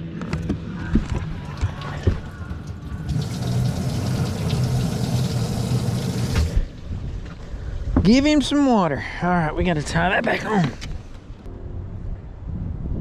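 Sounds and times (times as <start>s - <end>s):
water spraying into a tank: 1.5s - 6.7s
pump motor hum: 1.6s - 6.7s.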